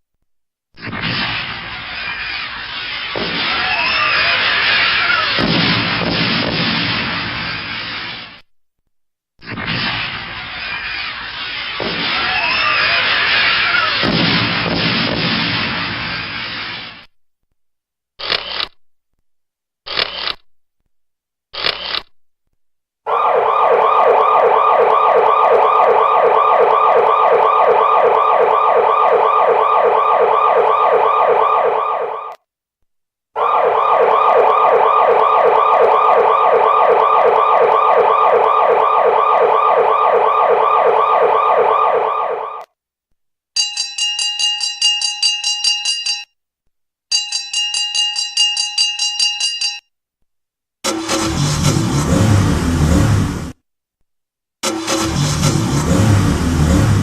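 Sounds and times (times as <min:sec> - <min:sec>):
electronic siren sweeping: 0:00.8 - 0:06.3, 0:09.7 - 0:14.7, 0:23.1 - 0:32.4, 0:33.4 - 0:42.7, 0:50.9 - 0:53.6, 0:54.6 - 0:57.0.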